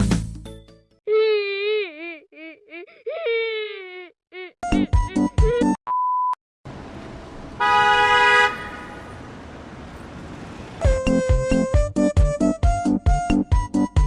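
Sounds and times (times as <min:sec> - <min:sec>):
car horn honking: 0:06.7 - 0:11.5
street traffic noise: 0:06.7 - 0:11.8
plucky music track: 0:10.8 - 0:11.9.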